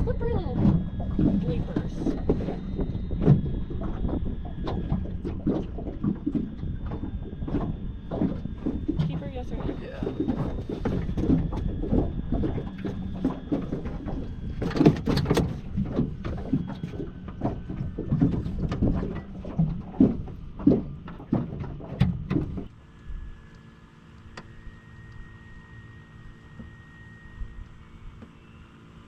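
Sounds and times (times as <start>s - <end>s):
wind buffeting microphone: 0.0s - 22.7s
steady hum: 0.0s - 29.0s
handling knocks and clatters: 13.7s - 22.7s.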